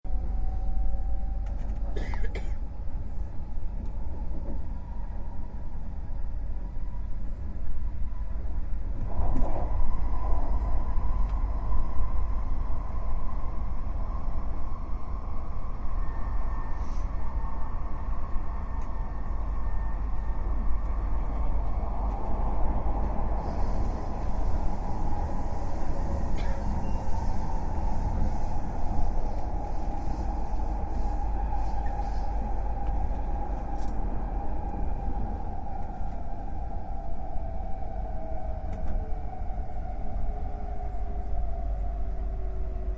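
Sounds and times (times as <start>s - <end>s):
low wind rumble: 0.0s - 42.9s
faint thin whistle: 26.8s - 27.4s.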